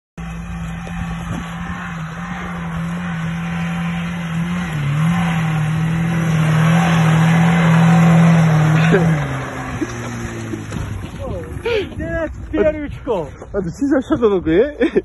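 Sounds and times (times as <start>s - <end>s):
car engine at high revs: 0.2s - 11.8s.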